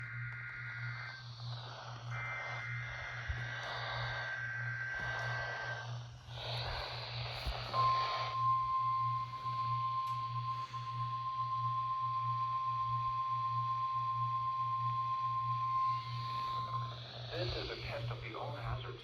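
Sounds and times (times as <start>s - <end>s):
radio hiss: 0.0s - 11.2s, 15.3s - 19.0s
warbling data tones: 0.0s - 12.6s, 14.6s - 19.0s
low mains hum: 0.0s - 19.0s
steady single tone: 7.6s - 16.9s.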